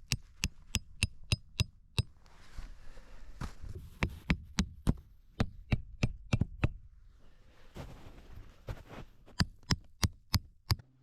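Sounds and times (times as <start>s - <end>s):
hammer striking tent stakes: 0.0s - 2.1s, 4.0s - 6.8s.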